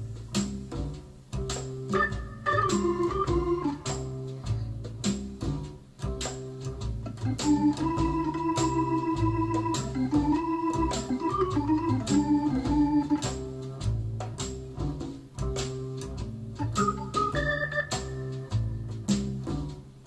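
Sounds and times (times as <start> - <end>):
drum beat: 0.0 - 20.0
organ melody: 1.8 - 4.4, 7.0 - 14.0, 15.8 - 19.5.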